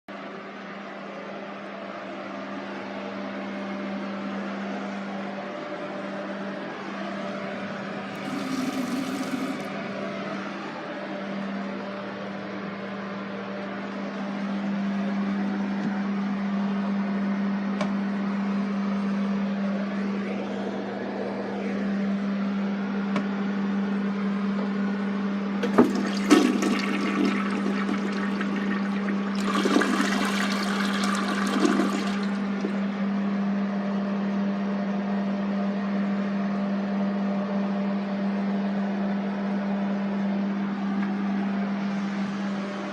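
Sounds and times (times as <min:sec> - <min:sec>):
toilet flushing and refilling: 0:08.1 - 0:09.8, 0:25.6 - 0:32.9.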